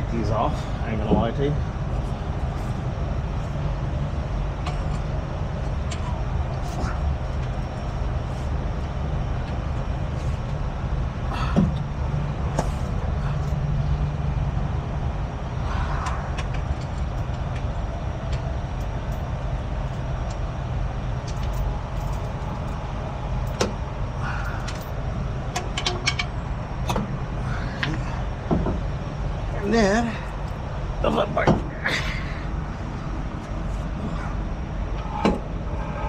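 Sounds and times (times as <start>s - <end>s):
truck engine idling: 0.0s - 36.0s
metal clicks and clanks of tools: 24.6s - 24.9s, 25.5s - 27.0s.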